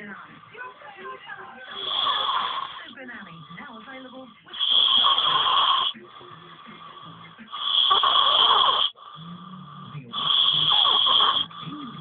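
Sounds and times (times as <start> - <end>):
boy snoring loudly: 1.6 - 2.9, 4.5 - 6.0, 6.6 - 12.0.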